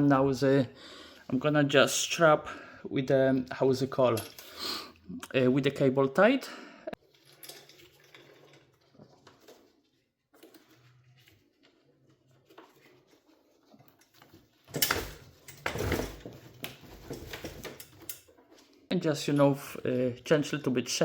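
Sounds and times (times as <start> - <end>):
faint handling noises: 7.0 - 19.6.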